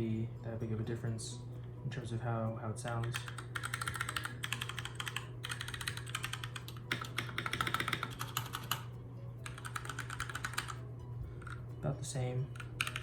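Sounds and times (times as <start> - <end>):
fast mechanical keyboard typing: 2.9 - 8.8, 9.4 - 10.8, 12.6 - 13.0.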